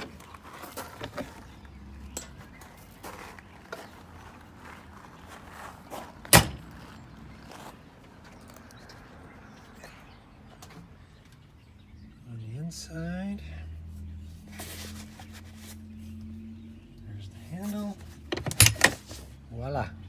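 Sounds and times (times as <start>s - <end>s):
door clunk: 2.1s - 2.5s, 6.3s - 7.0s, 18.3s - 19.0s
door handling clicks and knocks: 6.3s - 6.8s, 18.3s - 19.0s.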